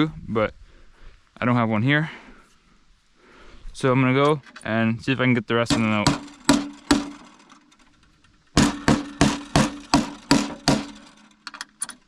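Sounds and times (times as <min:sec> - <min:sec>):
screwdriver tapping metal rivets: 0:05.7 - 0:07.9, 0:08.6 - 0:12.0.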